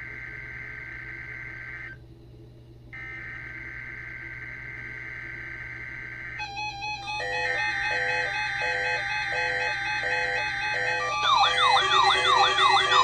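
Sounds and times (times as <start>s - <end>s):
buzzing digital data tones: 6.3s - 13.0s.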